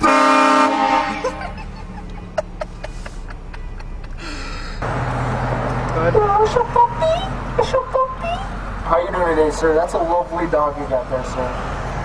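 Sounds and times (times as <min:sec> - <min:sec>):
train horn blast: 0:00.0 - 0:01.3
burst of laughter: 0:01.1 - 0:04.2.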